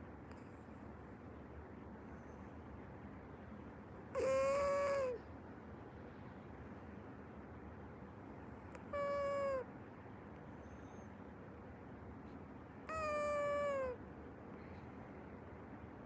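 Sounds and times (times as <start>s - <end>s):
pet whining cries: 4.1s - 5.2s, 8.8s - 9.7s, 12.8s - 14.0s.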